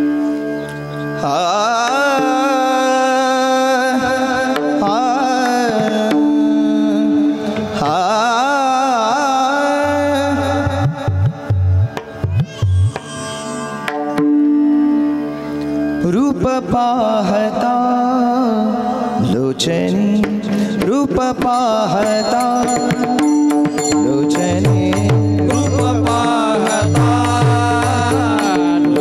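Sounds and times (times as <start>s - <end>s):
person singing devotional melody: 0.0s - 29.0s
hand drum strokes: 10.7s - 14.4s.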